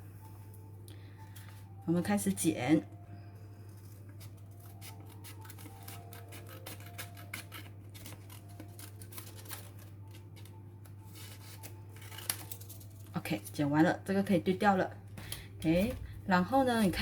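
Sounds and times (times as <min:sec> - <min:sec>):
scissors snipping paper: 0:03.7 - 0:13.1
paper rustling: 0:03.8 - 0:13.2.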